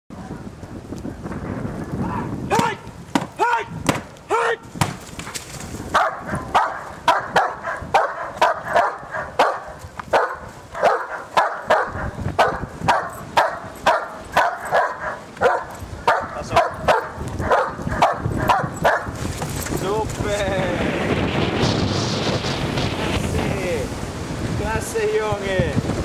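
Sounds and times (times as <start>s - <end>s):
dog barking in sharp yips: 5.9s - 19.2s.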